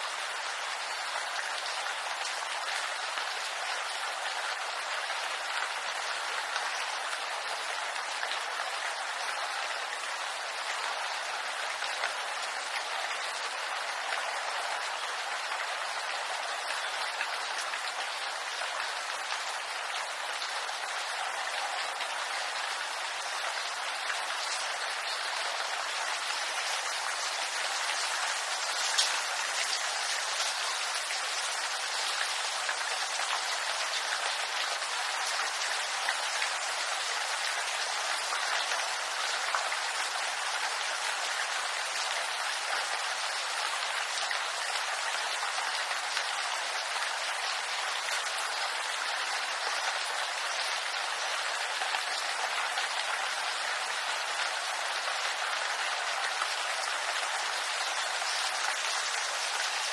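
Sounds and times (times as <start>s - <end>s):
rain falling in bamboo grove: 0.0s - 59.9s.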